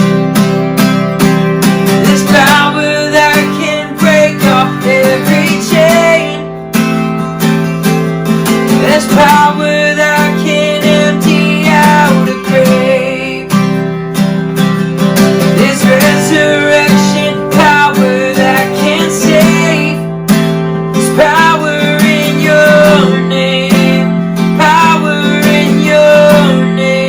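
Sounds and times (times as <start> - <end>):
strummed acoustic guitar: 0.0 - 27.0
person singing: 1.9 - 6.7, 8.7 - 13.8, 15.4 - 20.2, 20.9 - 27.0.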